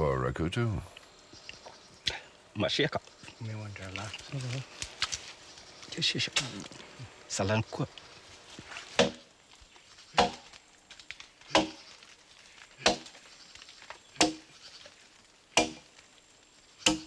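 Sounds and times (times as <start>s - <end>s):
axe chopping tree trunk: 8.9s - 9.3s, 10.2s - 10.5s, 11.5s - 11.9s, 12.8s - 13.2s, 14.1s - 14.5s, 15.5s - 15.9s, 16.8s - 17.0s.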